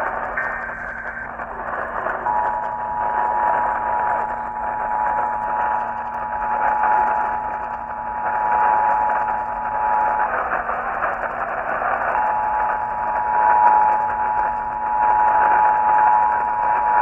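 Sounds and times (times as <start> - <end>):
radio static hiss: 0.0 - 7.4
two-tone attention signal: 0.4 - 5.8.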